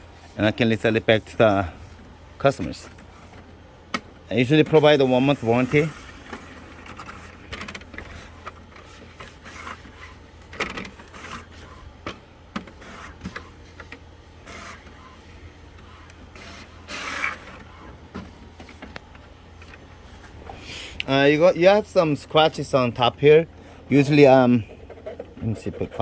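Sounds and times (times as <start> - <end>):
steady low hum: 0.0 - 26.0
inkjet printer working: 1.0 - 20.5, 21.1 - 26.0
printer clicks and scrapes: 4.6 - 19.0, 24.0 - 26.0.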